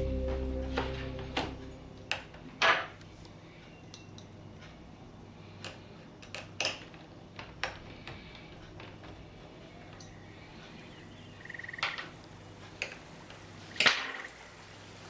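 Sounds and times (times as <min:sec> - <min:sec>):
faint background hiss: 0:00.0 - 0:03.7.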